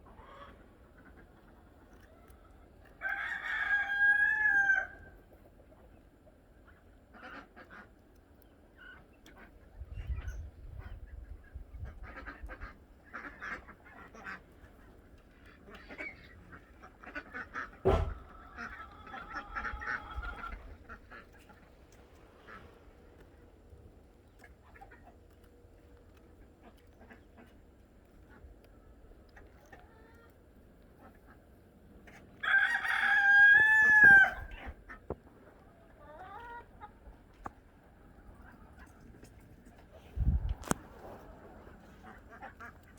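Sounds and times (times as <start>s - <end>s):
rooster crowing: 3.0s - 5.1s, 32.4s - 34.5s
ducks quacking: 6.6s - 23.4s, 24.3s - 25.5s, 26.1s - 32.3s, 33.4s - 42.9s
sharp knock: 17.8s - 18.2s.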